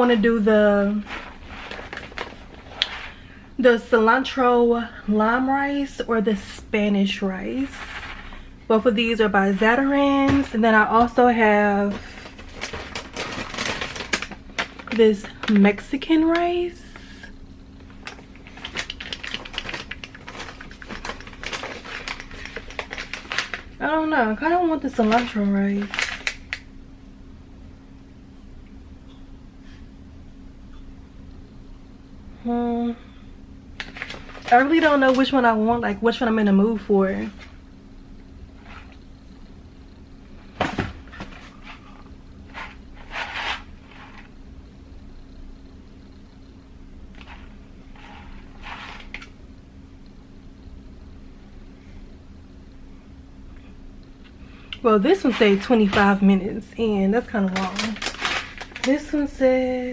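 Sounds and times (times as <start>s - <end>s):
faint steady hum: 0.0s - 59.9s
packets rustling and clattering: 1.0s - 3.2s, 7.6s - 8.5s, 10.2s - 16.4s, 17.8s - 23.8s, 24.6s - 26.6s, 33.8s - 35.4s, 40.4s - 44.3s, 47.1s - 49.3s, 57.4s - 59.2s.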